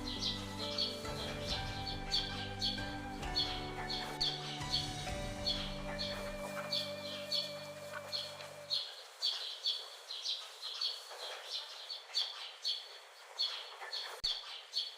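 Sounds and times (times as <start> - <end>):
held music chord: 0.0 - 8.9
bird chirping: 0.0 - 14.9
faint hiss: 4.1 - 12.2.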